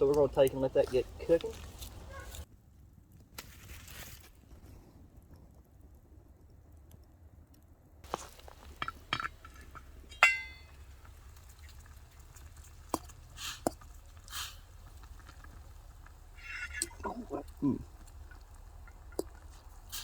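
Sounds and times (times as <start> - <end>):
metal cookware clinking: 8.1 - 11.8.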